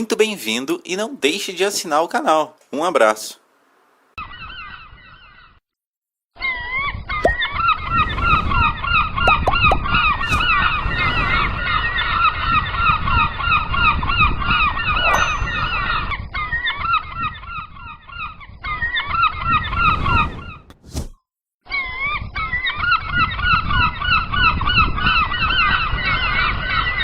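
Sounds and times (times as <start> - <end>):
low rumble: 7.8 - 13.2.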